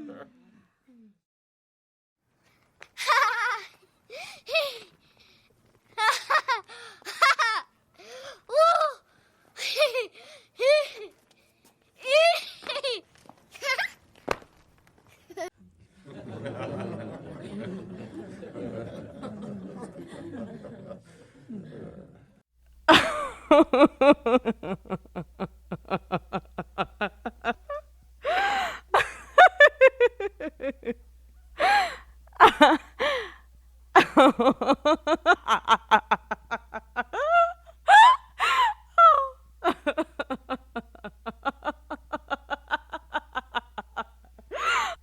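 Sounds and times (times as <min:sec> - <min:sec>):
person laughing hard: 0:06.0 - 0:07.7, 0:22.9 - 0:31.0, 0:31.6 - 0:33.4, 0:34.0 - 0:45.0.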